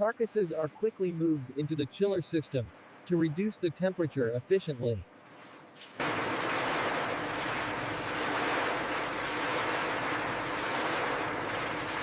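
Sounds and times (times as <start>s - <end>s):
faint machine hum: 0.0s - 12.0s
water rushing and churning: 6.0s - 12.0s.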